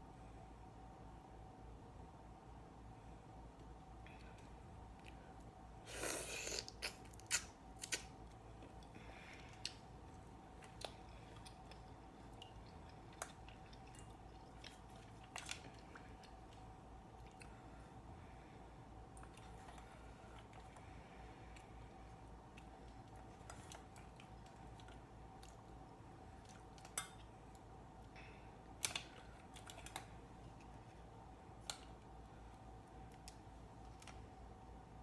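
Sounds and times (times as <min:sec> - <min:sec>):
faint steady hum: 0:00.0 - 0:35.0
eating clicks and smacks: 0:06.6 - 0:17.6.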